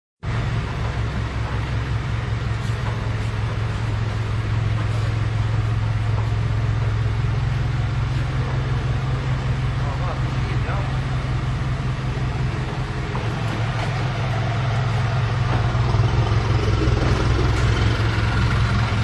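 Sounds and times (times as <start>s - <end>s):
machine droning: 0.2s - 19.0s.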